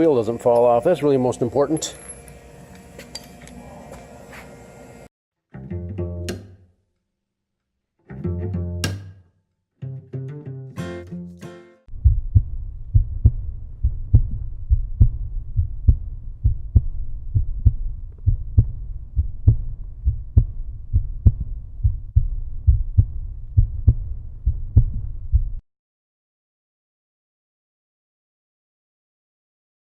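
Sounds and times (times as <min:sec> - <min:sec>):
bass-heavy music beat: 0:11.9 - 0:25.6.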